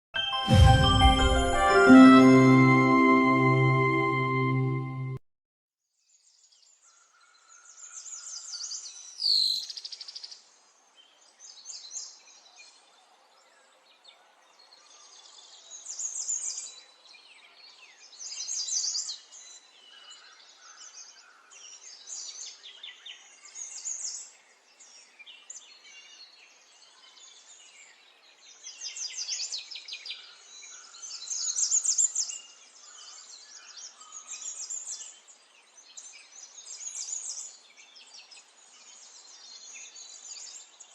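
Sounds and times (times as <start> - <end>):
sharp falling sweep sound: 0.2 - 5.0.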